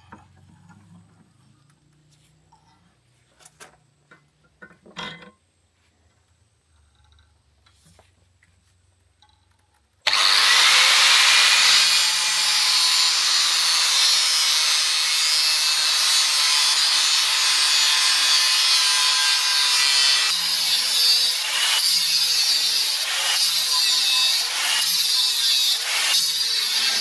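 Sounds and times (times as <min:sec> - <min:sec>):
power grinder grinding steel: 0:10.0 - 0:27.0.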